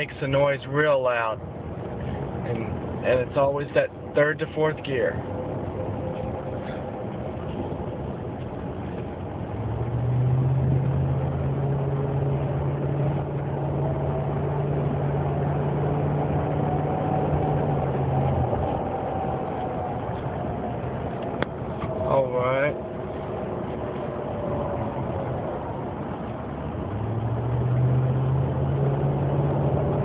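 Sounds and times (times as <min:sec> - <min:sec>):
truck running: 0:00.0 - 0:30.0
loud whining from truck: 0:00.9 - 0:30.0.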